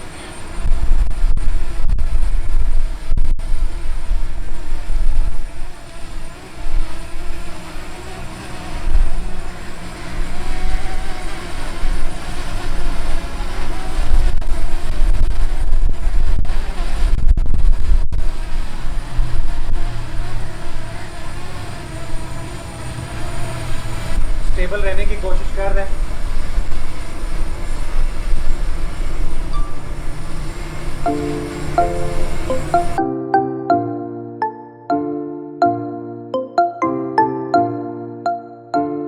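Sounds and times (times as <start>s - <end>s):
wind buffeting microphone: 14.2s - 19.8s
drone propellers buzzing: 26.4s - 33.0s.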